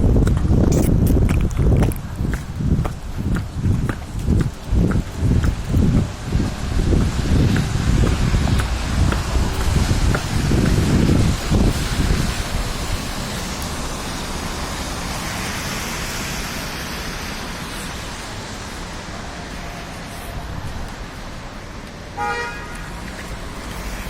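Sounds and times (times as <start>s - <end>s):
street traffic: 0.0s - 24.0s
car horn toot: 22.2s - 22.9s.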